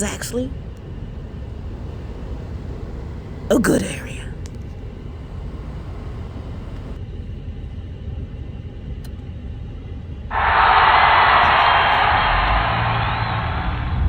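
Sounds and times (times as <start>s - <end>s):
car interior rumble: 0.0s - 7.0s
loud rushing noise: 10.3s - 14.0s.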